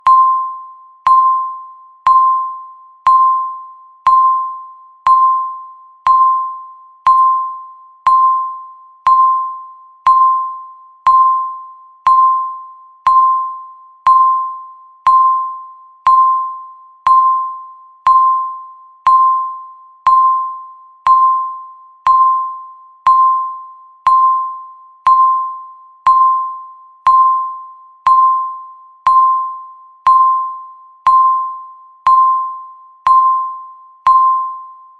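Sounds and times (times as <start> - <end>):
countdown timer beeping: 0.0 - 34.8.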